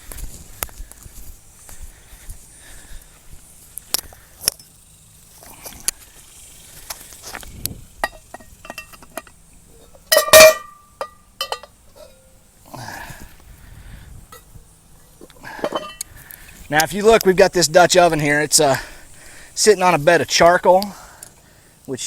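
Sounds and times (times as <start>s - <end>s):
metal pot clinks and knocks: 8.0s - 12.2s, 15.6s - 16.0s
loud ringing metal clang: 10.1s - 12.3s.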